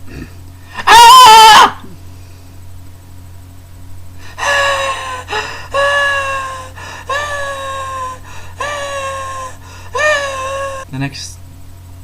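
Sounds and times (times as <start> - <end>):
man screaming: 0.8 - 1.9, 4.4 - 10.8.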